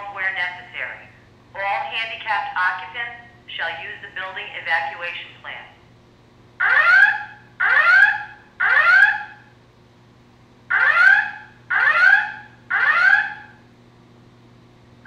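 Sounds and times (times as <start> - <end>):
spoken alarm messages: 0.0 - 5.9
fire alarm whoop tone: 6.6 - 9.5, 10.7 - 13.6.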